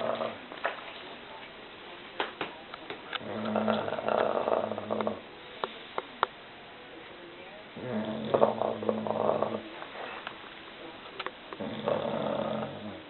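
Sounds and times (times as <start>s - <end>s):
dog snoring: 0.0s - 0.5s, 3.2s - 5.2s, 7.8s - 9.8s, 11.6s - 13.0s.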